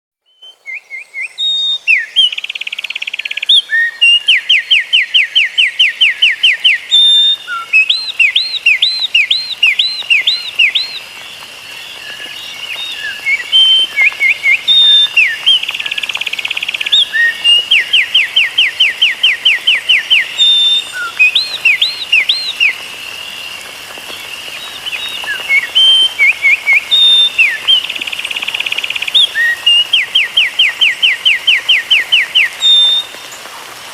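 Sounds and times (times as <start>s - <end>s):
songbird singing trills: 0.2s - 33.2s.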